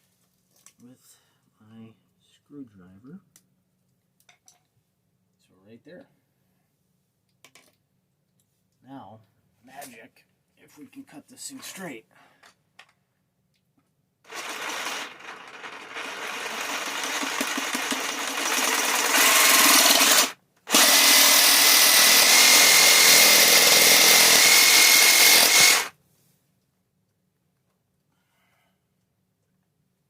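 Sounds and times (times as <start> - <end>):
power saw cutting pipe: 14.3 - 25.9.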